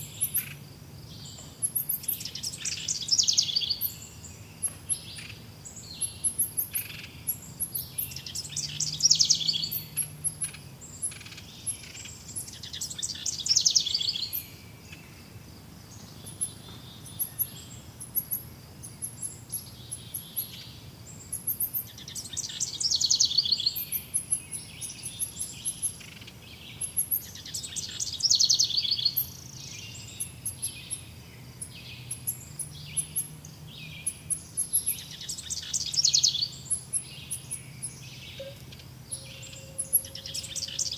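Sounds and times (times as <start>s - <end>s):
songbirds chirping: 0.0s - 40.9s
bird trilling: 38.3s - 40.9s.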